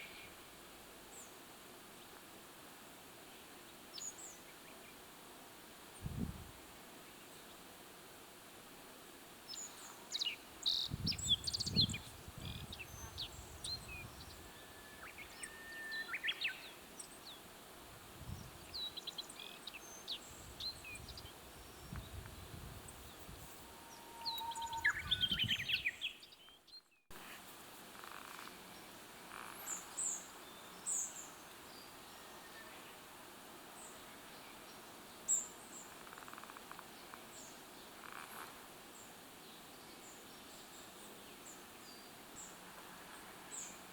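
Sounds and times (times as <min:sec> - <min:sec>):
outdoor background noise: 0:00.0 - 0:43.9
wild birds chirping: 0:18.3 - 0:27.1.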